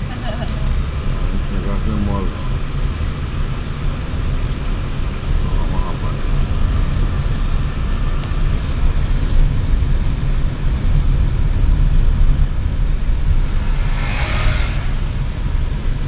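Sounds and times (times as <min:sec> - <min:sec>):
car engine and road noise: 0:00.0 - 0:16.0.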